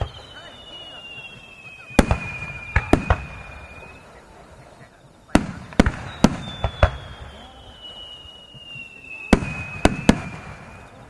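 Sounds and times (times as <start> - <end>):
firework shells bursting: 0.0 - 7.4
falling firework whistle: 0.0 - 11.0.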